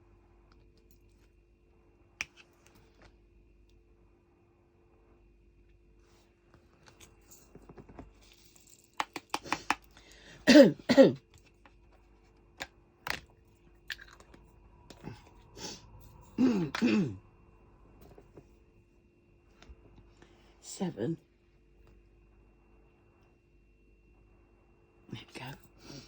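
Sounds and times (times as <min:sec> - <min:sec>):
woman coughing: 0:10.4 - 0:11.2, 0:16.4 - 0:17.2.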